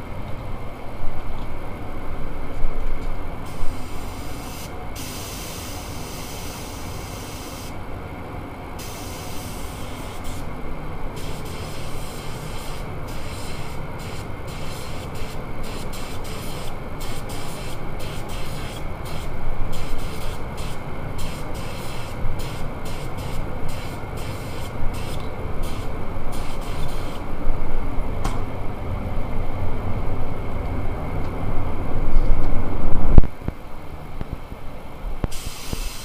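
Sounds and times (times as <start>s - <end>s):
air spray gun hissing: 3.5s - 7.8s, 8.8s - 10.5s, 11.2s - 27.2s, 35.3s - 36.0s.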